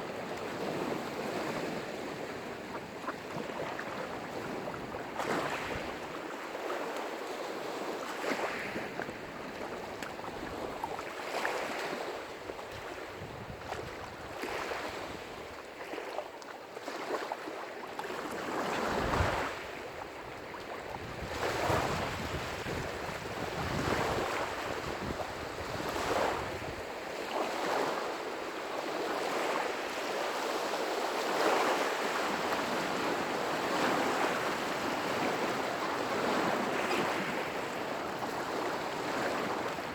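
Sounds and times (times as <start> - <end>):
lake waves breaking on shore: 0.0 - 39.9
wind on microphone: 12.5 - 15.6, 18.6 - 27.1.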